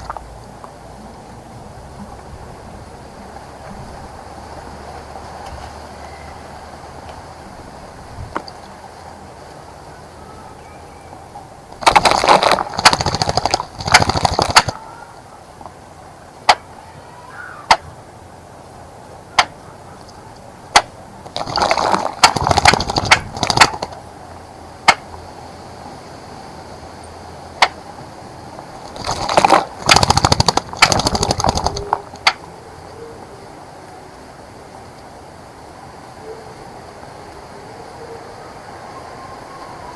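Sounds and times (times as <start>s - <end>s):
sharp ticks: 11.8s - 14.8s, 19.4s - 24.0s, 24.8s - 25.2s, 28.8s - 32.5s
bird splashing in water: 11.8s - 14.9s, 20.8s - 24.0s, 28.7s - 32.3s.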